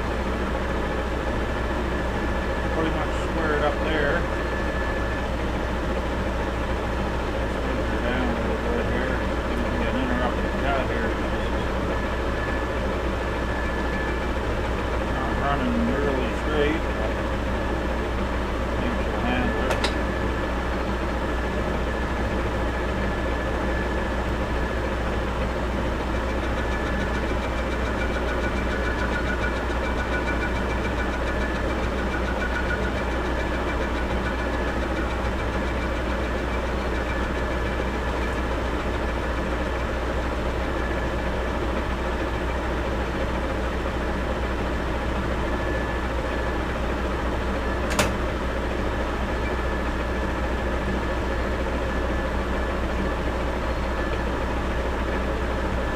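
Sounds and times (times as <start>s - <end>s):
metal lathe cutting: 0.0s - 55.9s
sharp click: 19.7s - 20.0s, 47.9s - 48.2s.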